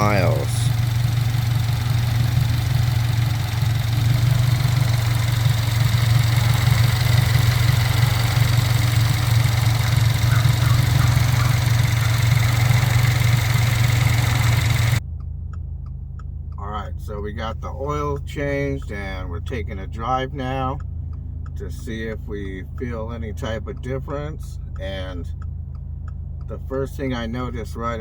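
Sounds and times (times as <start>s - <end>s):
car engine idling: 0.0s - 28.0s.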